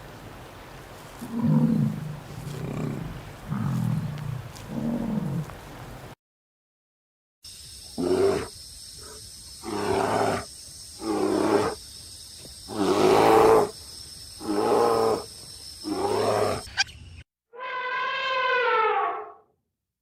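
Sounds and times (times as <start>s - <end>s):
different animal call: 15.8s - 19.4s.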